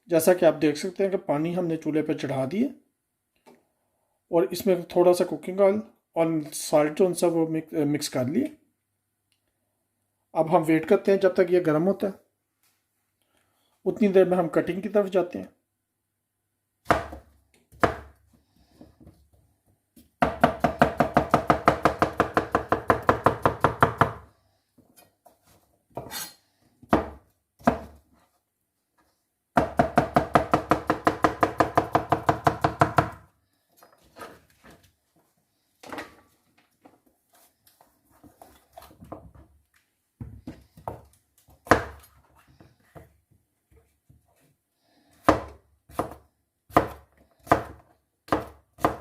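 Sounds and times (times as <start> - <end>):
knife chopping on cutting board: 16.9 - 18.1, 20.2 - 24.2, 26.9 - 28.0, 41.6 - 42.0, 45.2 - 49.0.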